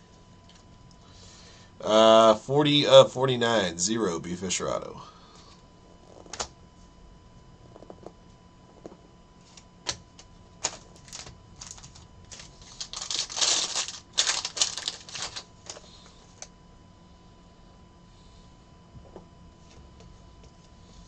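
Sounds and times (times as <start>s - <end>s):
cards rustling and sliding: 10.6s - 16.5s.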